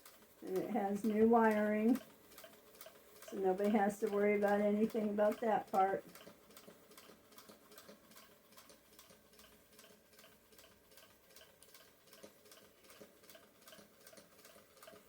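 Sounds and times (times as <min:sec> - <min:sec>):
sewing machine needle ticking: 0:00.0 - 0:15.0.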